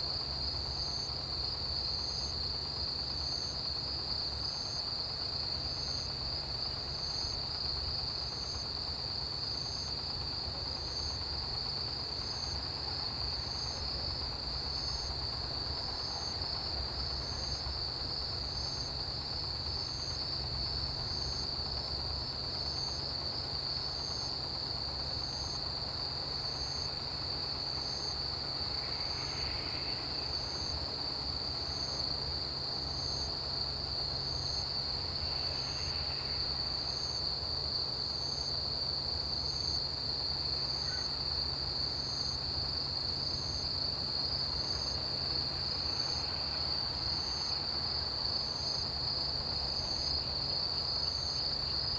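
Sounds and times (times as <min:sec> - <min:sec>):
insect chirping: 0:00.1 - 0:51.9
cricket steady high trill: 0:00.4 - 0:51.9.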